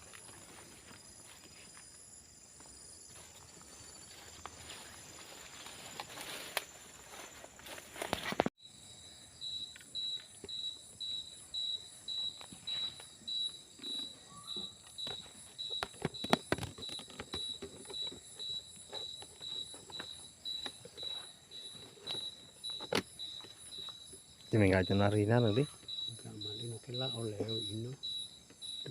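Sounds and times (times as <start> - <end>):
cricket chirping: 0.0 - 28.9
insect whine: 0.0 - 28.9
knocks and rustles: 13.9 - 24.2.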